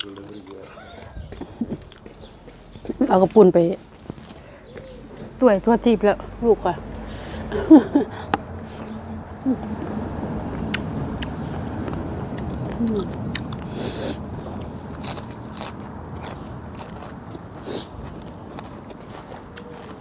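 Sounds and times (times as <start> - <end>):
mouth clicks and smacks: 0.0 - 3.0, 10.5 - 15.2
person chewing food: 0.0 - 3.0, 9.6 - 20.0.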